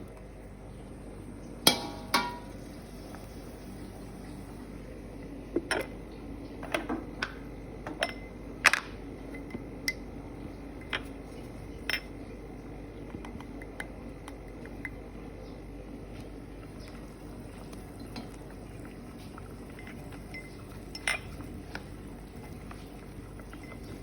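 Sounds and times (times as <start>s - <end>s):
steady low hum: 0.0s - 24.0s
cookware and utensils clinking: 1.6s - 2.5s, 6.6s - 10.0s, 11.8s - 12.2s, 19.6s - 21.9s.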